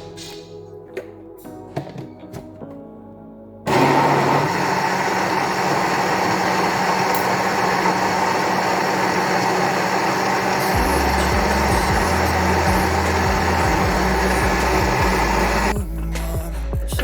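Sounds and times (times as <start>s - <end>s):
electric blender running: 3.7s - 15.7s.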